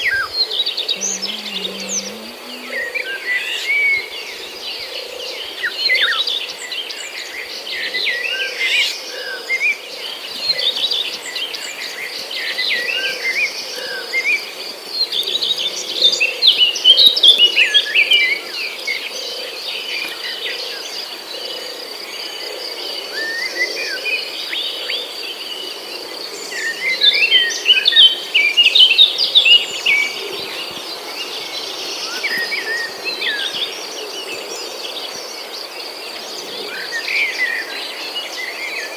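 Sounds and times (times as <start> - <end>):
high-pitched insect drone: 1.0 - 3.2.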